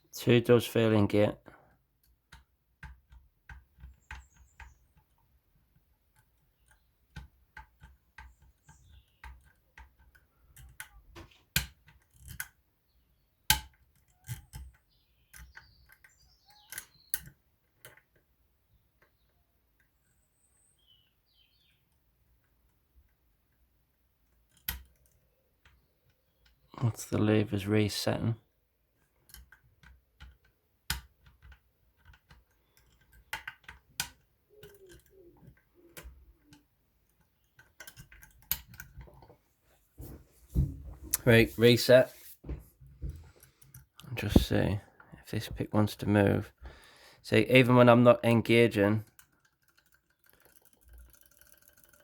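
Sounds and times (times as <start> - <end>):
lock picks clicking in a lock: 2.0 - 12.6, 13.5 - 18.2, 21.9 - 26.6, 29.0 - 39.0, 49.0 - 52.0.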